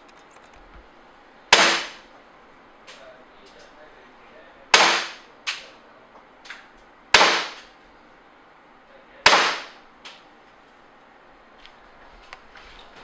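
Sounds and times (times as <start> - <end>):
airsoft pistol shots: 1.5 - 2.0, 4.7 - 5.3, 7.1 - 7.7, 9.2 - 9.8.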